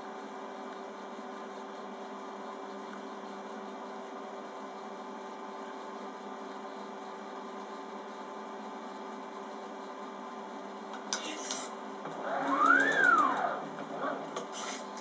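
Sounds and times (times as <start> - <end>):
motor humming with hiss: 11.2 - 15.0.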